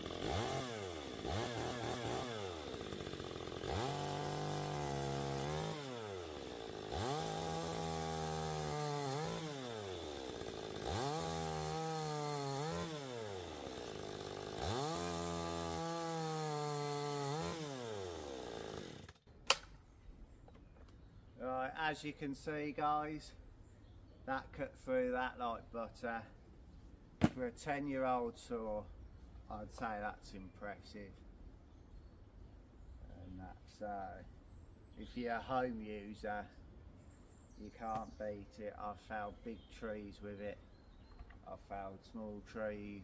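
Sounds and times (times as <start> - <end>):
chainsaw cutting wood: 0.0 - 19.7.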